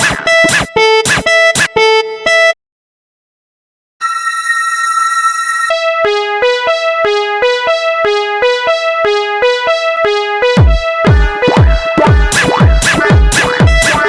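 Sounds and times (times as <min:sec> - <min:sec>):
heavy beat with deep kick drums: 0:00.0 - 0:01.8, 0:10.0 - 0:14.0
synthesized keyboard notes: 0:00.0 - 0:02.6, 0:05.7 - 0:14.0.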